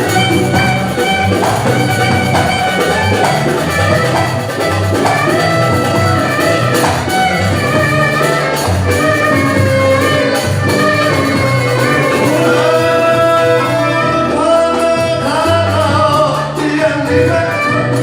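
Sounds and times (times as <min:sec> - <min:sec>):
folk instrumental melody: 0:00.0 - 0:18.0.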